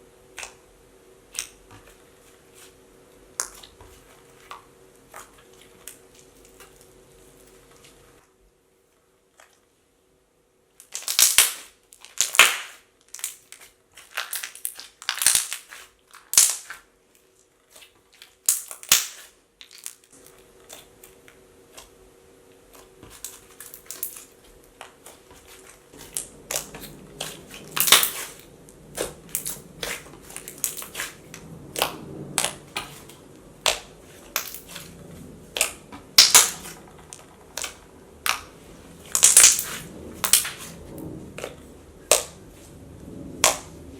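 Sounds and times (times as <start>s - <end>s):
slime squishing: 10.8s - 16.9s, 17.6s - 43.9s.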